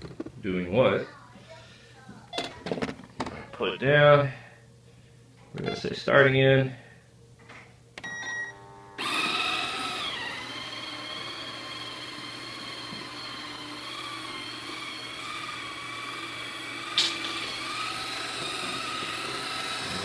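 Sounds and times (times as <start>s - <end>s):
robot vacuum motor whine: 8.4s - 20.0s.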